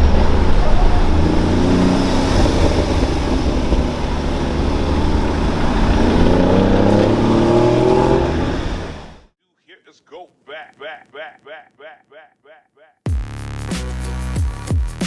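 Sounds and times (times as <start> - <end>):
car engine accelerating hard: 0.0 - 9.3.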